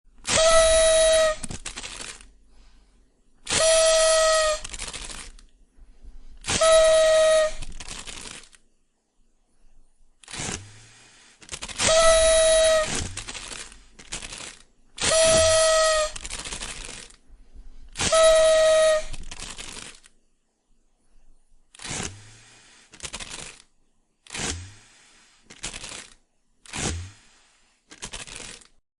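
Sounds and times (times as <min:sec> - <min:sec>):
party whistle blasts: 0:00.2 - 0:01.5, 0:03.5 - 0:04.8, 0:06.5 - 0:07.7, 0:11.8 - 0:13.2, 0:15.0 - 0:16.4, 0:18.0 - 0:19.2
short breathy whistle toots: 0:03.5 - 0:04.8, 0:11.8 - 0:13.2, 0:15.0 - 0:16.3, 0:17.9 - 0:19.2.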